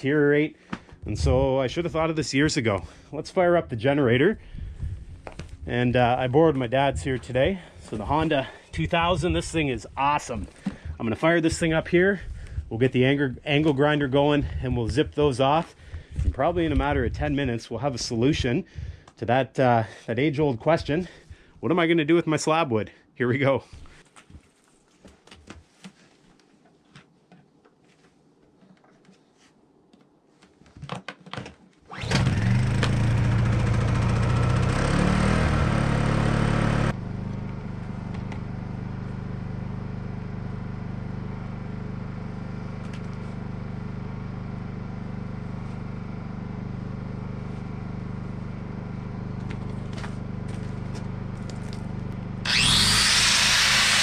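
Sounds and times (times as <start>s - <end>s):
generator running: 4.2s - 16.8s, 31.9s - 54.0s
angle grinder: 31.9s - 36.9s, 52.4s - 54.0s.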